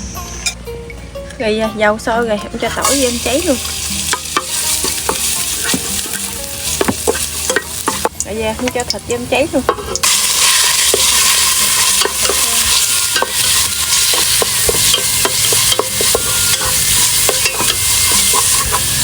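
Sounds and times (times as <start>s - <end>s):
meat sizzling in hot oil: 2.8s - 19.0s
utensil clicking against pot: 4.1s - 19.0s.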